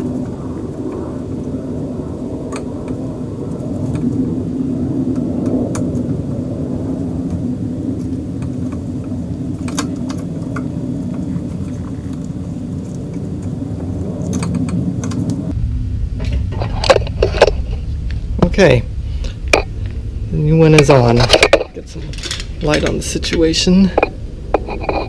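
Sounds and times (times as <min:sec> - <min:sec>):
steady low rumble: 0:00.0 - 0:25.0.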